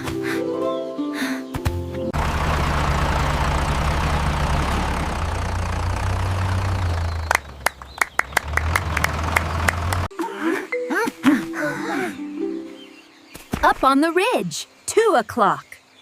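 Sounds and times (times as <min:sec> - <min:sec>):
cartoon engine rumble: 0:02.2 - 0:10.1.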